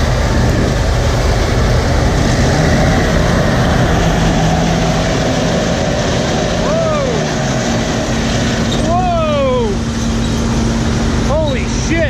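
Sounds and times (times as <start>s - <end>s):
combine harvester engine drone: 0.0s - 12.0s.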